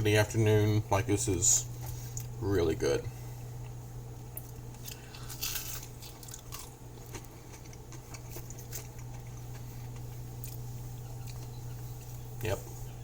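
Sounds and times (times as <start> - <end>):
person chewing crispy food: 3.6 - 12.2.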